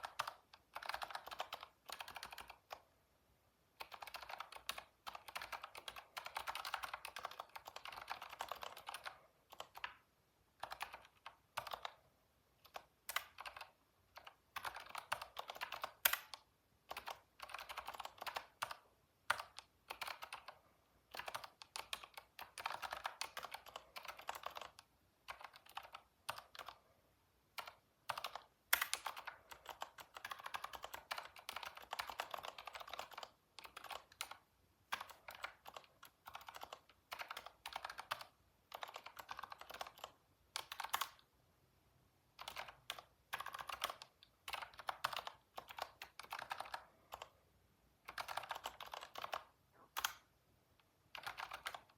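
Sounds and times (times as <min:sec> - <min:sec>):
typing on computer keyboard: 0:00.0 - 0:02.9, 0:03.8 - 0:26.9, 0:27.5 - 0:41.3, 0:42.3 - 0:47.4, 0:48.0 - 0:50.3, 0:51.0 - 0:51.9.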